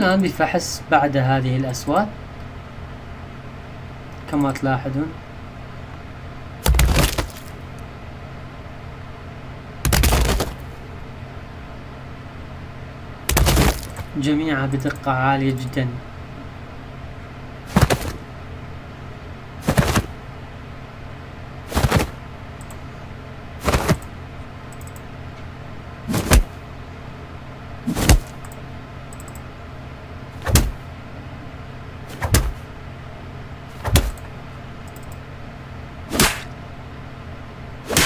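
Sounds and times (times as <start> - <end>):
fight hits and impacts: 6.6 - 7.5, 9.9 - 10.6, 13.3 - 14.1, 17.7 - 18.2, 19.6 - 20.1, 21.7 - 22.2, 23.6 - 24.0, 26.1 - 26.6, 27.9 - 28.4, 30.4 - 30.8, 32.1 - 32.6, 33.8 - 34.2, 36.1 - 36.5.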